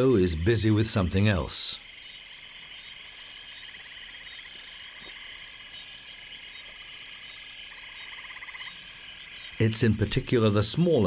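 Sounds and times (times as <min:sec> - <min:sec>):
frogs calling: 0:00.0 - 0:11.0
insects trilling: 0:00.0 - 0:11.0.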